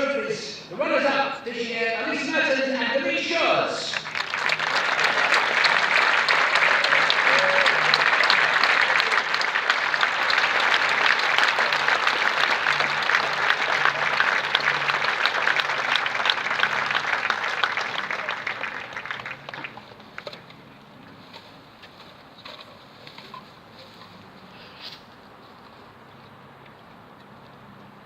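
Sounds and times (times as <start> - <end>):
crowd clapping: 3.0 - 20.5.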